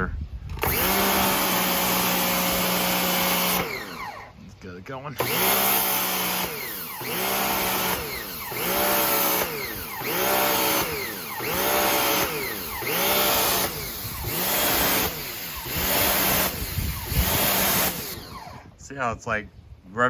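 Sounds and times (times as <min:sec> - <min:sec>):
pressure washer motor revving: 0:00.5 - 0:04.4, 0:05.1 - 0:18.8
water spray: 0:05.2 - 0:18.6.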